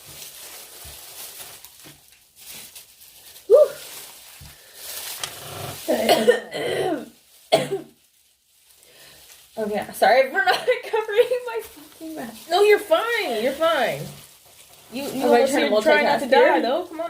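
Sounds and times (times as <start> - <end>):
woman coughing: 5.9 - 8.0, 10.4 - 11.0.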